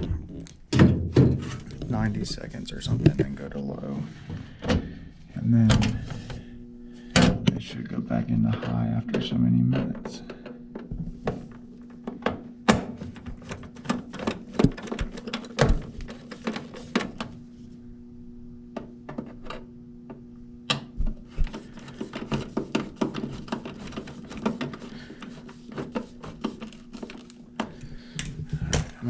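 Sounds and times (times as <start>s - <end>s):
knocks clunks and rubbing: 0.0s - 5.0s
steady low hum: 0.0s - 29.0s.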